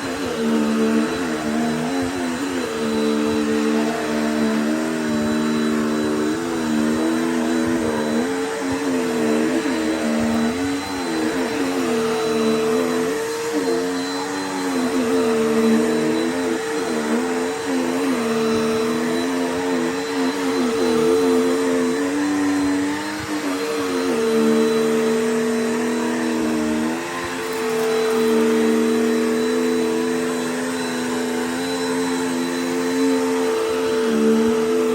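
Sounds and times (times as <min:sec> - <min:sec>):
vacuum cleaner running: 0:00.0 - 0:34.9.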